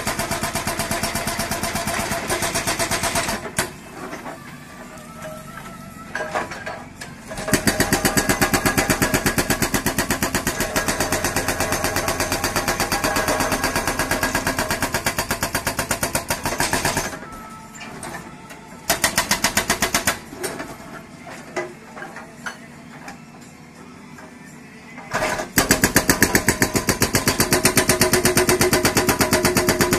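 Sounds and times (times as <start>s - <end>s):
machine noise: 0.6s - 21.1s
hydraulic rock breaker hammering: 6.1s - 17.3s, 25.1s - 29.9s.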